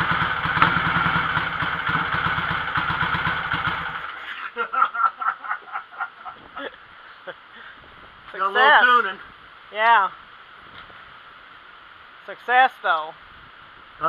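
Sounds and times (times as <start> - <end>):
motorcycle engine running: 0.0 - 4.2.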